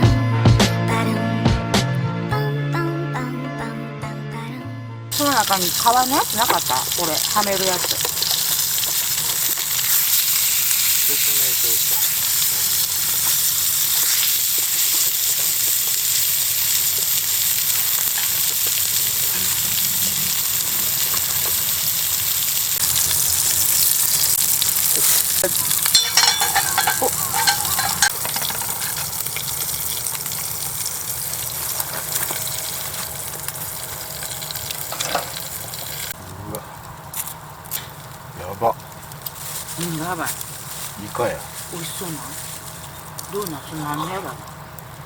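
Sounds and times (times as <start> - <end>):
food sizzling in a pan: 5.1 - 45.0
utensils clattering: 5.2 - 10.1, 24.8 - 30.4, 31.4 - 36.1.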